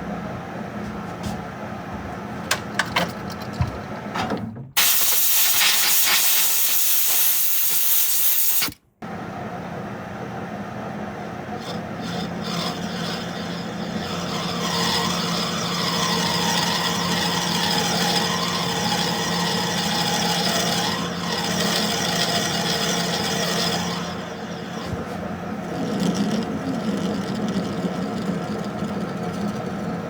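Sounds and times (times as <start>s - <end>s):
metal rasping against metal: 11.6s - 25.0s, 25.6s - 30.0s
machine hum: 19.9s - 30.0s.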